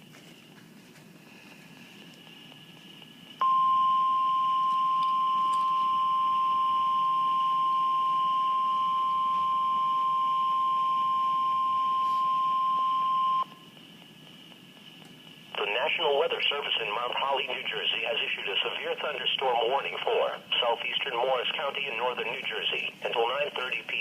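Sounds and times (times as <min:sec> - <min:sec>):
faint radio hiss: 0:00.0 - 0:24.0
high warning alarm tone: 0:03.4 - 0:13.7.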